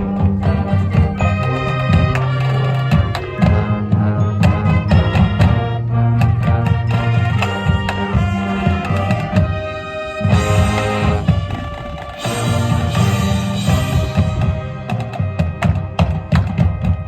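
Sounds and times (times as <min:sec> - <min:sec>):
marching band playing: 0:00.0 - 0:17.0.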